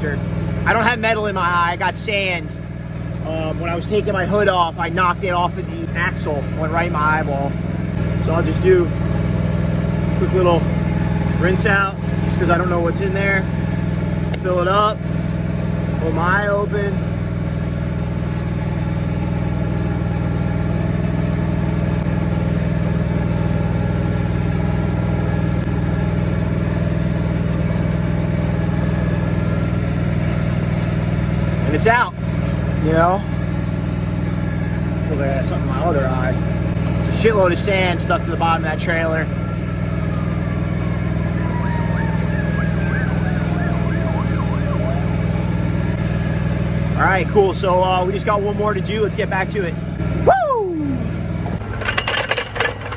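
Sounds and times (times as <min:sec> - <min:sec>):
engine idling: 0:00.0 - 0:52.9
emergency siren yelping: 0:33.2 - 0:46.8.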